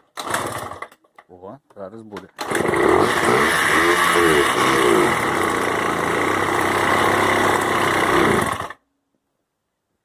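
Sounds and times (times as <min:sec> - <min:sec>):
small engine revving: 0:02.4 - 0:08.8.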